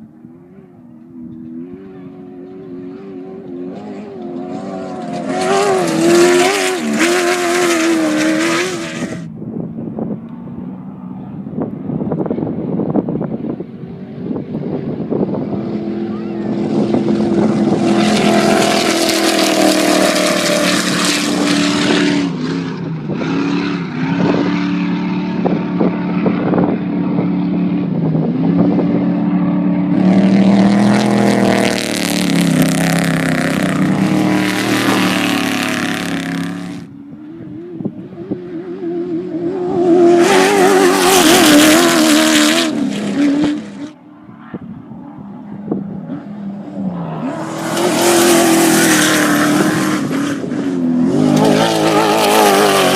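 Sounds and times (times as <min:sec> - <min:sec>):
race vehicles passing at speed: 0:00.0 - 0:52.9.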